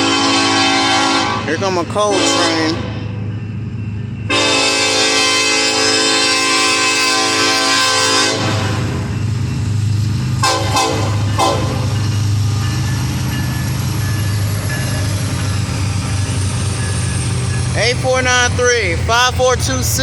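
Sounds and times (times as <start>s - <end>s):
locomotive air horn: 0.0s - 3.0s, 4.3s - 9.0s, 10.4s - 12.0s
diesel locomotive rumble: 0.0s - 20.0s.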